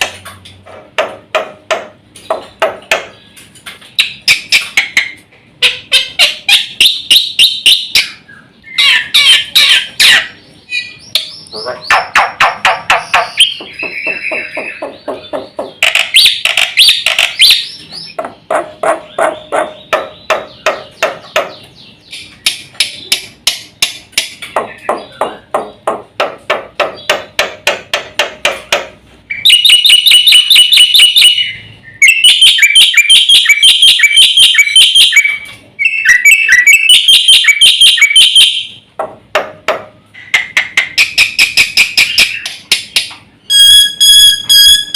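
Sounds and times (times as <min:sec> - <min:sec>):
bird singing chattering whistles: 0:05.6 - 0:18.2, 0:29.3 - 0:38.8, 0:40.9 - 0:44.9.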